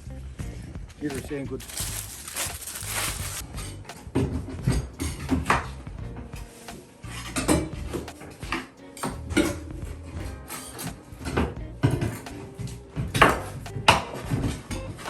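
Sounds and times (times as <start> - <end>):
debris clattering: 1.1 - 5.7.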